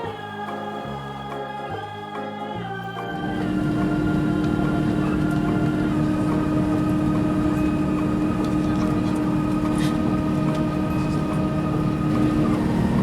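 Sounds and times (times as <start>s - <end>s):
airliner cabin hum: 3.2s - 13.0s.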